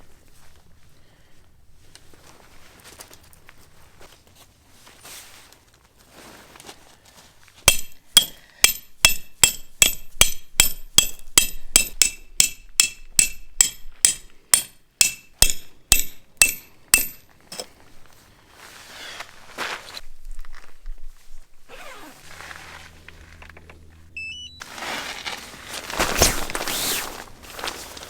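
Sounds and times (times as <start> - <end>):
rustle: 0.0 - 7.7, 17.3 - 28.0
metallic hammer blows ringing: 7.7 - 17.3.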